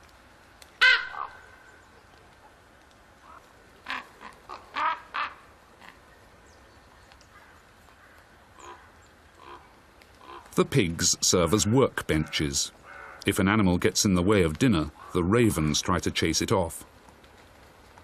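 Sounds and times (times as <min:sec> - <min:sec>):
ravens croaking: 0:00.8 - 0:01.8, 0:03.2 - 0:06.1, 0:07.2 - 0:13.5, 0:14.6 - 0:15.9.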